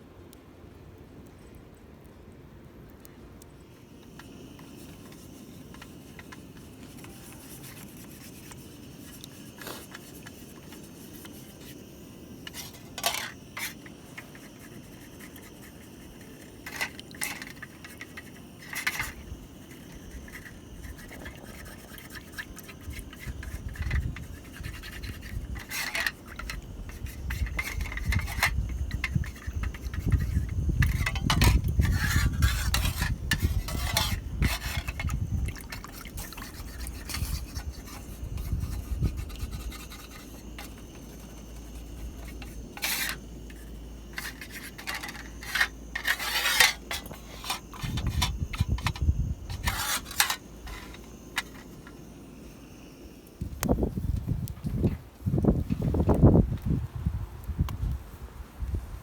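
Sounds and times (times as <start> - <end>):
utensils scraping cookware: 12.4 - 52.0.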